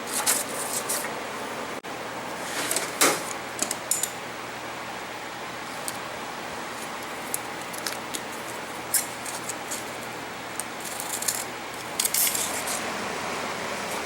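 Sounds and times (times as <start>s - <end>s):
small metal objects clinking: 10.8s - 12.8s.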